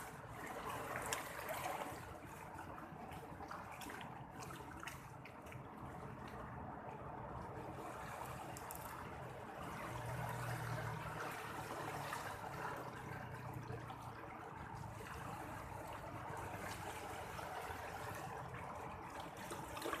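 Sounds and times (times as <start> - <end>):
sea water washing and trickling: 0.0 - 20.0.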